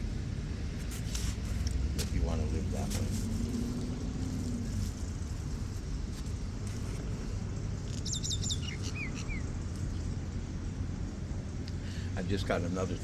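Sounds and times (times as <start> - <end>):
low background rumble: 0.0 - 13.0
bird calling: 8.0 - 9.5.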